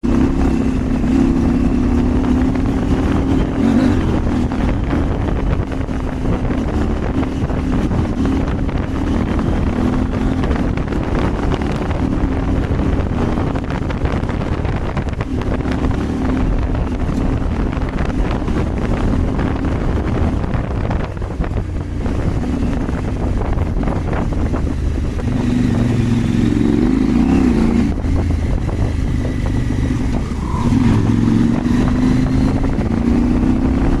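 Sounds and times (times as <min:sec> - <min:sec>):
motorcycle engine running: 0:00.0 - 0:34.0
wind buffeting microphone: 0:00.0 - 0:34.0.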